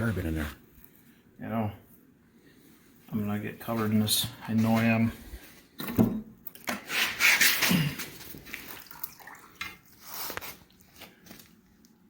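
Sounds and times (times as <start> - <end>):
water splashing and dripping: 8.4 - 10.0.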